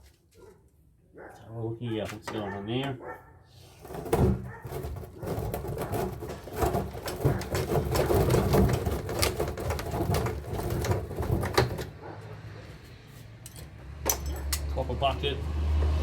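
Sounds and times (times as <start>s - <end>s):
metallic rattling and clicking: 3.9s - 12.2s.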